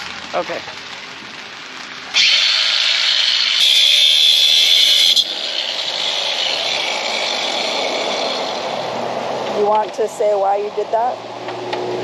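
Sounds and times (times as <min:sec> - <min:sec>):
power tool cutting steel: 0:02.1 - 0:09.0.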